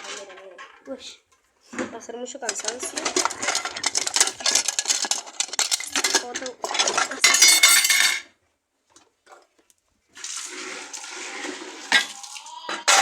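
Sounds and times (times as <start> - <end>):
dishes and cutlery clattering: 2.4 - 8.3, 11.8 - 13.0
running water: 10.1 - 13.0.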